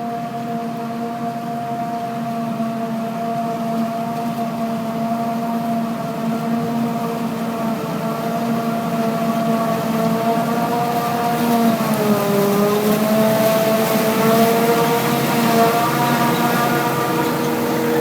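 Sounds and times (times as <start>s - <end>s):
diesel engine running: 9.0s - 18.0s.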